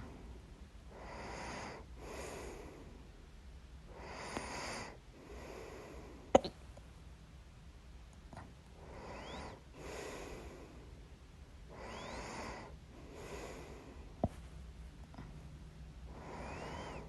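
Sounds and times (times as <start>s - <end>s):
person breathing: 0.0s - 3.1s, 3.9s - 6.4s, 8.8s - 11.0s, 11.7s - 14.5s, 16.1s - 17.0s.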